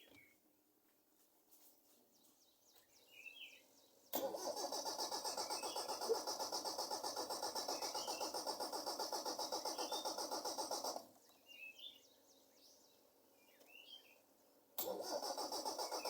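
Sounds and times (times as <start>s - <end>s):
engine starter cranking: 4.2s - 11.1s, 14.8s - 16.0s.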